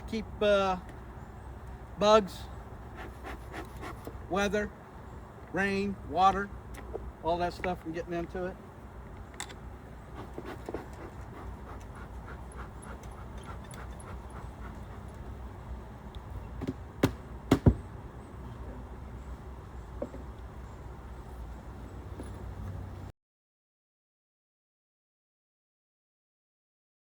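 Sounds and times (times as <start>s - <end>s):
low outdoor background: 0.0s - 23.1s
wooden beehive box knocks: 16.6s - 17.8s.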